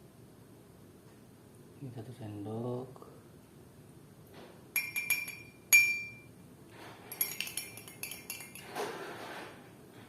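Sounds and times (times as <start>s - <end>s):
spoon clinking against glass: 4.8s - 6.3s, 7.1s - 8.8s.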